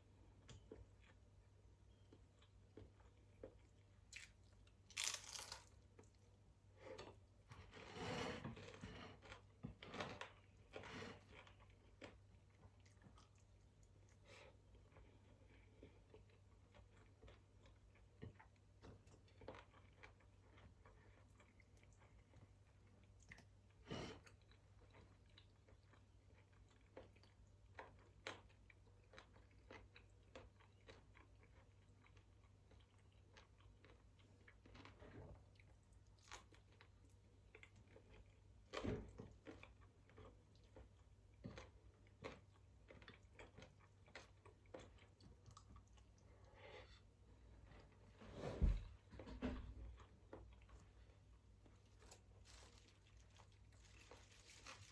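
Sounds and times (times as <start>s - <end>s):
chewing and mouth sounds: 11.2s - 46.5s.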